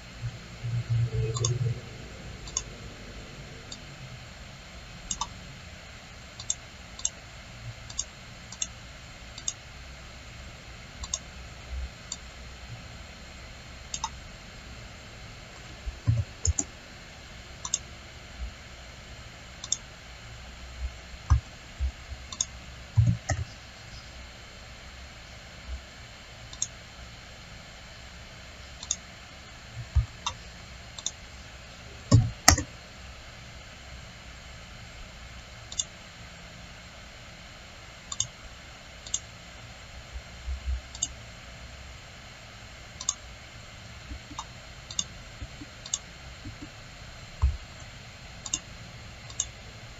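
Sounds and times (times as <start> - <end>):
computer mouse clicking: 1.1 - 1.7, 2.4 - 2.8, 3.6 - 3.9, 5.1 - 5.3, 6.4 - 7.2, 7.8 - 9.6, 11.0 - 11.3, 13.9 - 14.2, 16.0 - 16.7, 17.6 - 17.8, 19.6 - 19.9, 21.3 - 23.6, 26.5 - 26.8, 28.8 - 29.0, 31.0 - 31.2, 32.1 - 32.7, 35.7 - 35.9, 38.1 - 38.4, 39.0 - 39.3, 40.9 - 41.2, 43.0 - 43.2, 44.1 - 46.8, 47.4 - 48.7, 49.3 - 49.6.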